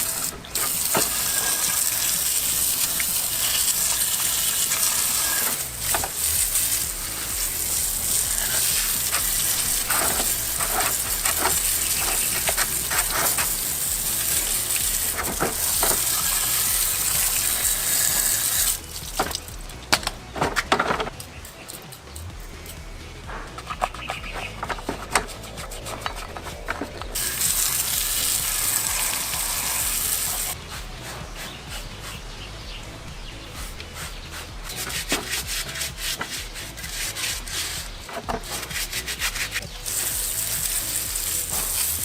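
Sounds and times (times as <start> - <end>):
hissing spray: 0.0 - 19.6, 24.4 - 42.0
sharp clicks and knocks: 18.1 - 27.6.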